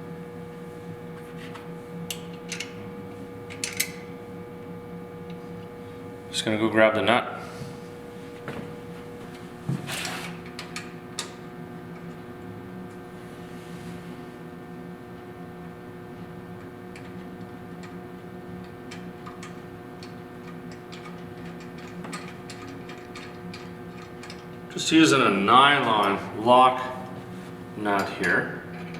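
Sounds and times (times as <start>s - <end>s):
steady hum: 0.0s - 28.9s.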